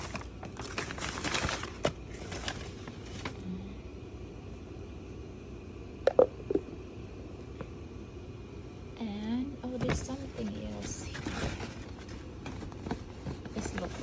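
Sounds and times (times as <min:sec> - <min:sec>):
gift packaging crinkling: 0:00.0 - 0:03.4.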